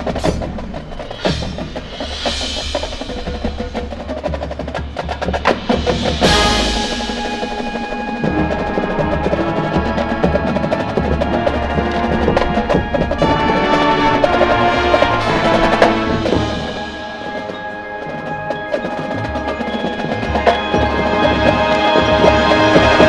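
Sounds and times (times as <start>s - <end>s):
bell-like mallet strikes: 0.0s - 2.3s
marching band playing: 0.0s - 23.0s.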